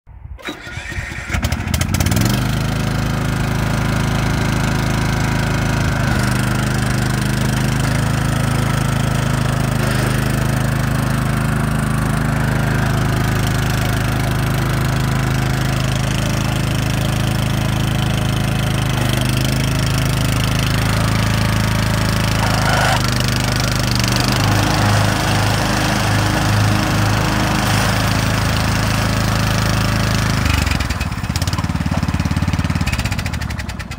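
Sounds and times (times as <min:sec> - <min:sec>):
lawnmower engine running: 0:00.4 - 0:33.9.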